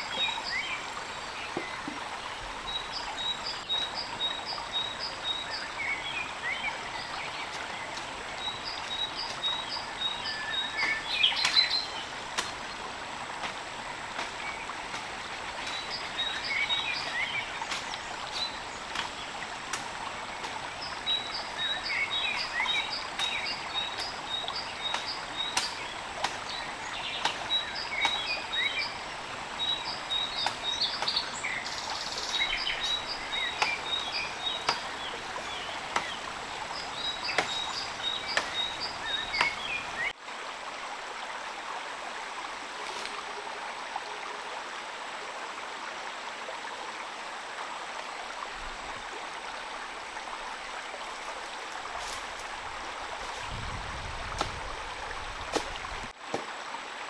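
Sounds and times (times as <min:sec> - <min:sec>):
birds calling: 0:00.0 - 0:12.8, 0:14.2 - 0:40.2
rain hissing in forest: 0:00.0 - 0:57.0.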